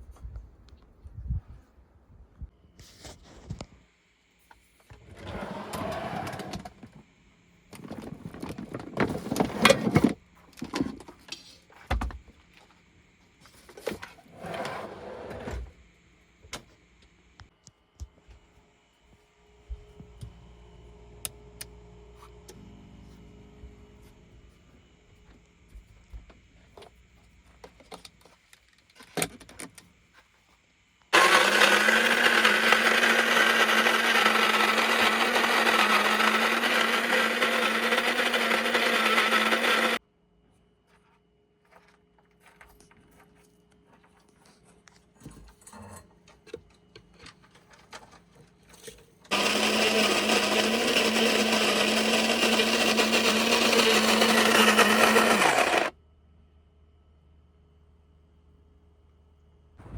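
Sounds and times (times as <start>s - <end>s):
blender motor running: 31.2s - 40.0s, 49.3s - 55.9s.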